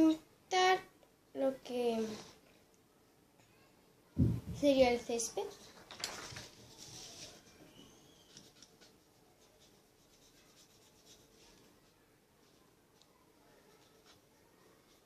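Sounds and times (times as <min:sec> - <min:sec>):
paintbrush stroking paper: 0:04.8 - 0:15.0.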